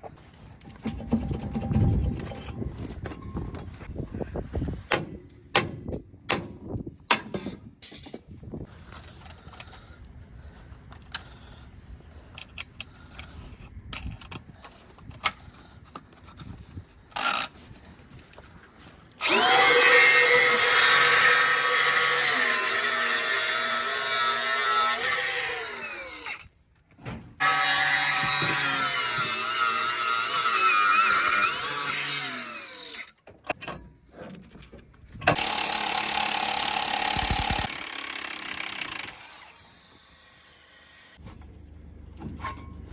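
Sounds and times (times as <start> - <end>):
angle grinder cutting metal: 19.2 - 26.4, 27.4 - 33.2, 35.3 - 41.2.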